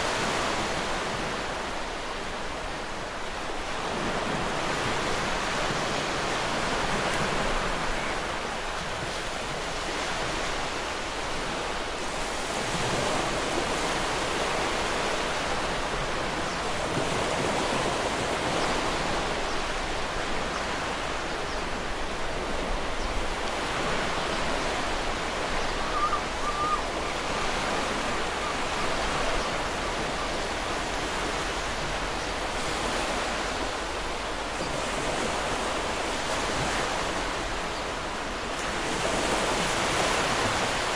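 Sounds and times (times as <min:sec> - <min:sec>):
surf washing onto beach: 0:00.0 - 0:40.9
bird call: 0:25.6 - 0:27.2.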